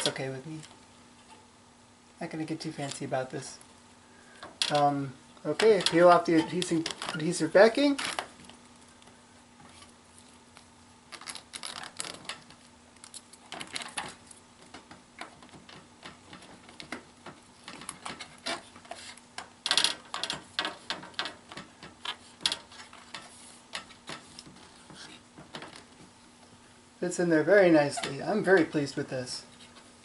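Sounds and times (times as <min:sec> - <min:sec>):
adhesive backing peeling: 0:04.6 - 0:08.8, 0:09.6 - 0:25.9.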